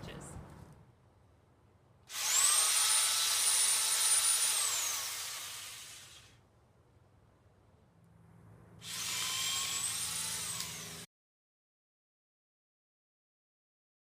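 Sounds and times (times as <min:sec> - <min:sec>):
electric chainsaw motor whining: 0:02.1 - 0:06.4, 0:08.8 - 0:11.1.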